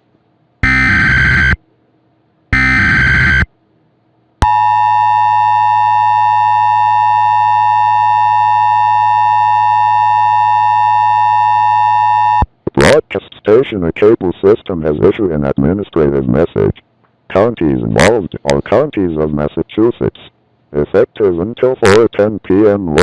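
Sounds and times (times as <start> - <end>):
screechy data bursts: 0.6 - 1.6, 2.6 - 3.5
two-tone alert signal: 0.6 - 1.6, 2.6 - 3.5, 4.4 - 11.4.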